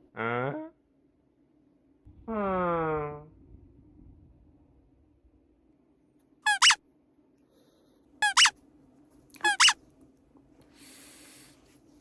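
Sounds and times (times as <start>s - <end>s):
high-pitched squeaks: 6.5s - 6.8s, 8.2s - 8.5s, 9.4s - 9.8s.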